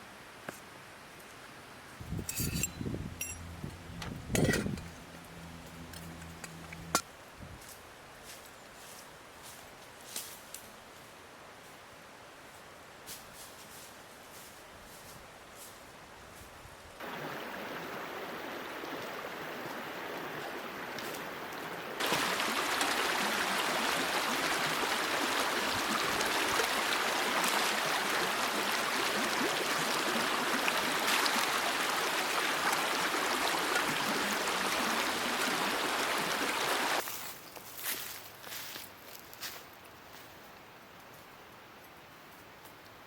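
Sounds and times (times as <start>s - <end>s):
mountain stream rushing: 17.0s - 37.0s.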